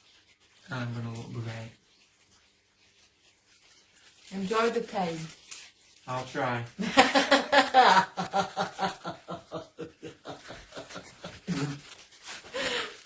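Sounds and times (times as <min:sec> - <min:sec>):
person laughing: 0:06.8 - 0:11.9.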